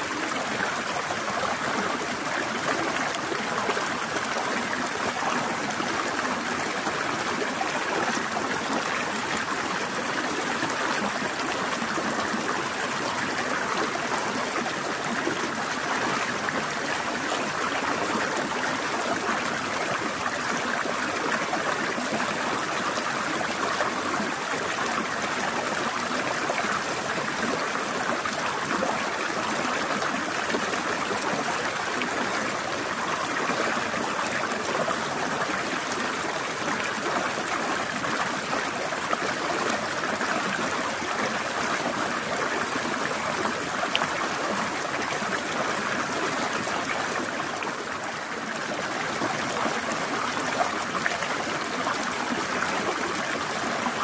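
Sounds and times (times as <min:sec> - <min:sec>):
forest stream flowing: 0:00.0 - 0:54.0.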